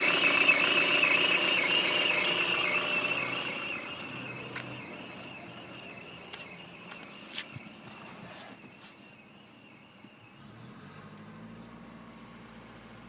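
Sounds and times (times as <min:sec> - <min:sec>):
belt squealing whistle: 0:00.0 - 0:10.4
car engine running: 0:00.0 - 0:13.0.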